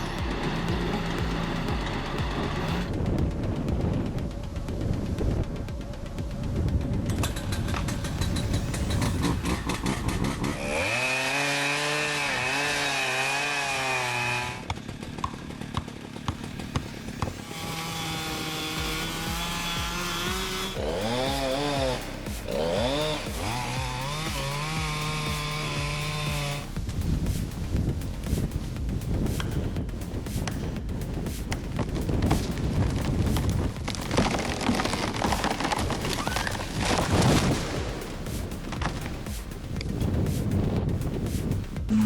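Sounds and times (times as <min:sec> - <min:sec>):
chainsaw engine revving: 0:00.0 - 0:02.9, 0:07.2 - 0:26.8, 0:33.8 - 0:39.3.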